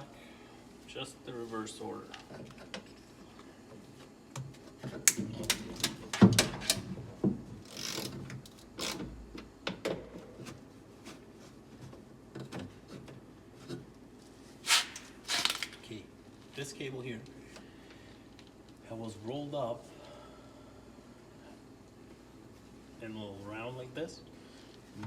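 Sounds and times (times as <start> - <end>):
short scrape: 14.6 - 15.6.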